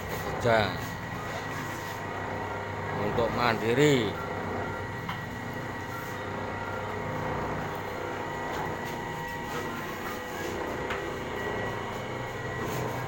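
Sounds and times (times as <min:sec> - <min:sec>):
constant machine whine: 0:00.0 - 0:13.0
machine rumble: 0:00.0 - 0:13.0.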